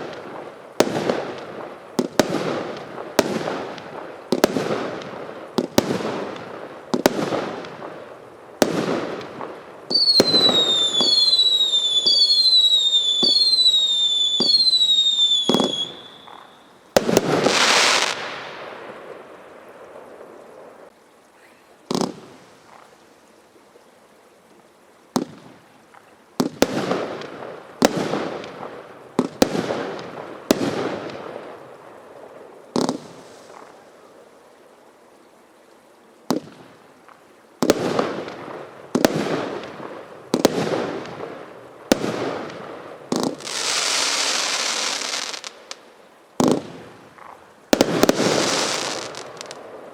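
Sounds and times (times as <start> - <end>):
firework bangs with crackle: 0.0 - 19.1, 21.9 - 22.3, 26.4 - 31.4, 32.8 - 33.8, 36.3 - 45.8, 46.4 - 49.9
falling firework whistles: 9.9 - 18.4, 43.1 - 45.8, 47.7 - 49.6.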